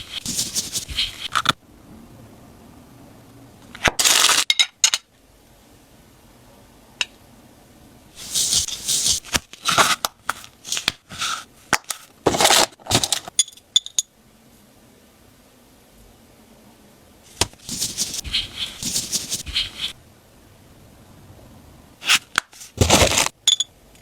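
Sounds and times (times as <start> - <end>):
paper crinkling: 0.0 - 1.5, 8.2 - 13.2, 17.3 - 20.0, 22.0 - 23.3.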